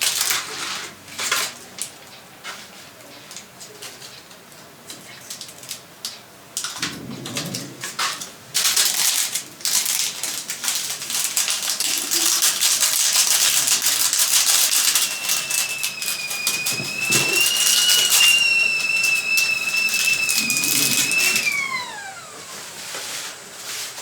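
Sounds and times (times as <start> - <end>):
dense rapid crackling: 8.9 - 21.8
high-pitched whistle: 14.3 - 22.3.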